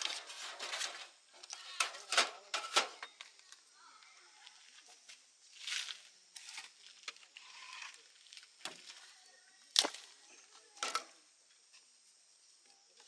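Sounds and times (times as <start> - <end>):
rustling: 0.0 - 3.0.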